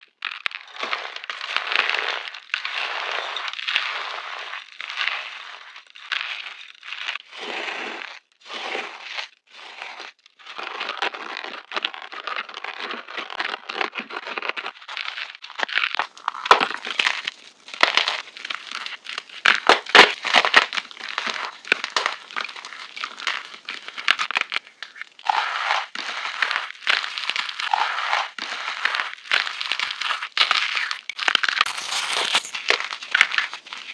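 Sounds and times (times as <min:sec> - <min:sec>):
chalk crunching and crackling: 0:31.7 - 0:32.6.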